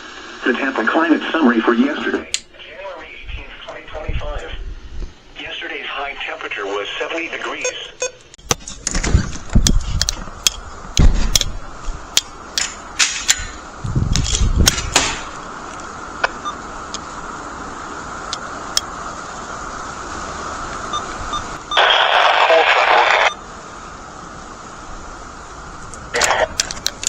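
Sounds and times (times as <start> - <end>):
radio static clicks and pops: 0.0 - 11.6, 14.0 - 17.1, 20.7 - 23.4, 25.8 - 27.0
radio static hiss: 0.0 - 27.0.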